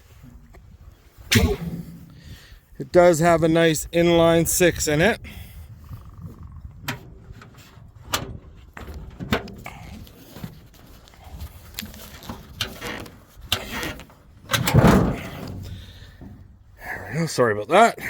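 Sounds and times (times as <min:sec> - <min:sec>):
truck hood clicks and clunks: 0:06.8 - 0:10.8, 0:11.8 - 0:16.6.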